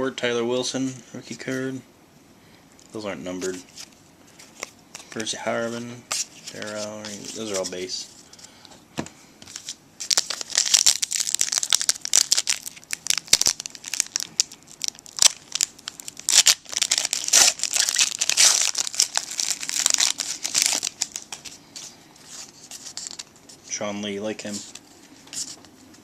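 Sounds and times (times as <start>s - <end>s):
foil wrapper crinkling and tearing: 9.6s - 21.6s.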